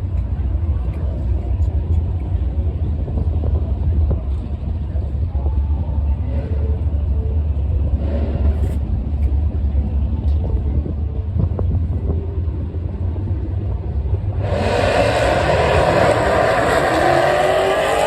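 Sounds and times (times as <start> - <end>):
car engines rumbling: 0.0 - 18.0
faint voices: 0.0 - 18.0.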